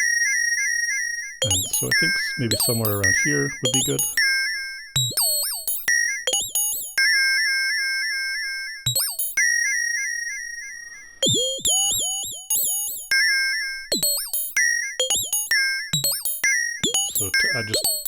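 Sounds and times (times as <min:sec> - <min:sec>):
chirp-like synthesizer notes: 0:01.4 - 0:04.2.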